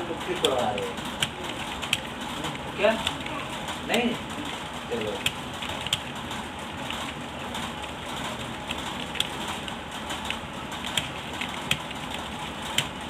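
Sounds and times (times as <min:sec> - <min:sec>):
sharp clicks: 0:00.3 - 0:02.2, 0:05.0 - 0:13.0.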